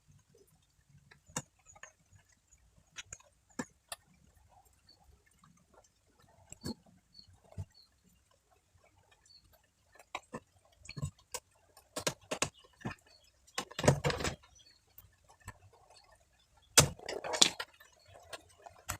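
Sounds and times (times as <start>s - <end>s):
small hard objects clicking: 10.0s - 18.9s.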